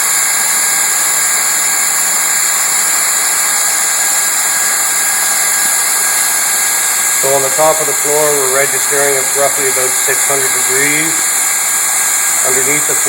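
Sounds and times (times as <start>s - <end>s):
hot-air welding gun hissing: 0.0s - 13.0s.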